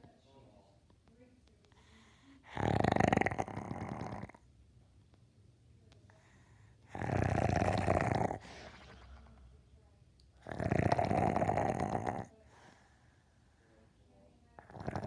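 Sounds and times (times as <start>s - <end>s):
dog snoring: 2.4s - 4.4s, 6.8s - 8.5s, 10.4s - 12.4s, 14.6s - 15.0s
soft breath out: 12.4s - 14.0s.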